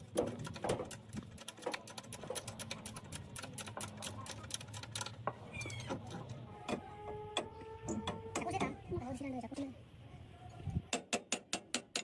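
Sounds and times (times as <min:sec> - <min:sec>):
rapid clicking: 0:00.0 - 0:05.2.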